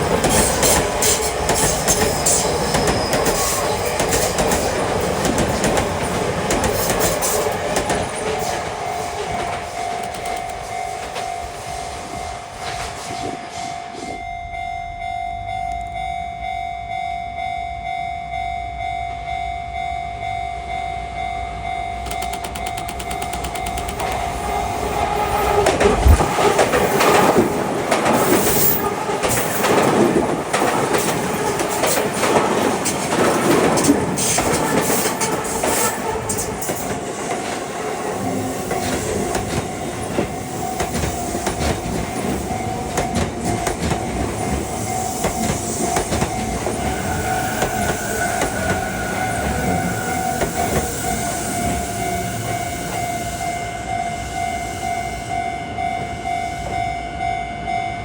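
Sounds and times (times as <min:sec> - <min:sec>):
level crossing alarm ringing: 0:00.0 - 0:12.9, 0:13.5 - 0:58.0
train wheels clattering: 0:00.0 - 0:13.7, 0:22.0 - 0:53.2.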